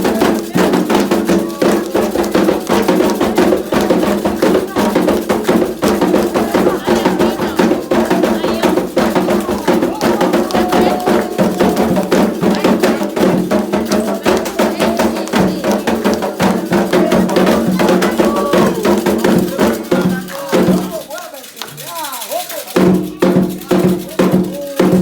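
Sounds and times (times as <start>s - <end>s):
group singing a chant: 0.0s - 21.0s
hand drums playing fast rhythm: 0.0s - 25.0s
struck percussion: 0.0s - 25.0s.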